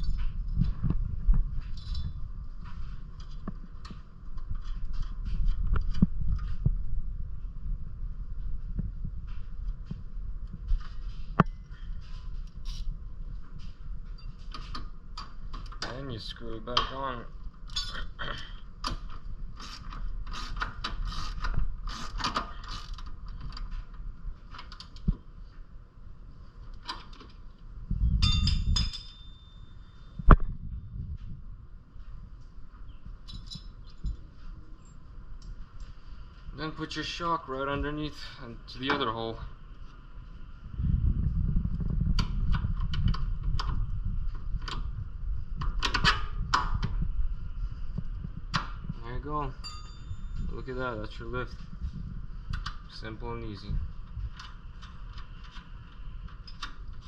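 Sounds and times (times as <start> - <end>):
steady low rumble: 0.0 - 22.0, 27.3 - 57.0
metal tools clinking: 17.7 - 18.1, 28.2 - 29.7, 33.2 - 35.0
ratchet clicks: 19.6 - 23.6.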